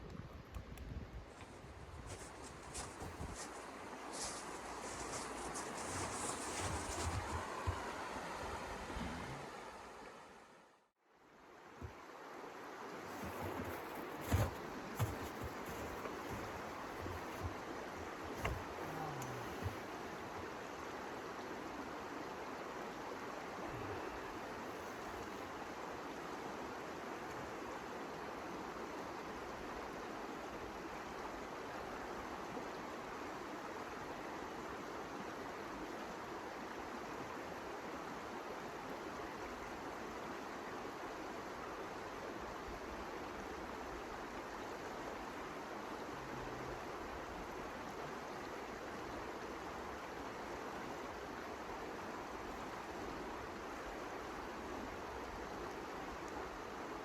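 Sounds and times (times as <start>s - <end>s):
steady rushing noise: 2.2s - 10.6s.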